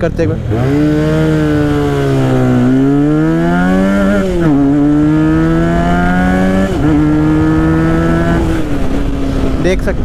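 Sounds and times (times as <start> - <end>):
motorcycle engine accelerating: 0.0 - 10.0.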